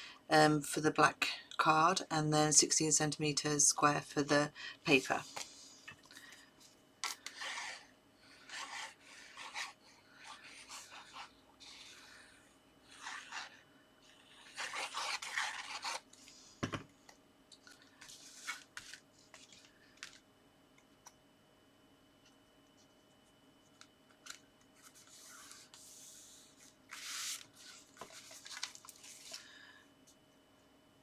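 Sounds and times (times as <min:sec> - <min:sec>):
paper rubbing and scraping: 0:07.0 - 0:16.2, 0:18.0 - 0:19.7, 0:24.2 - 0:29.4.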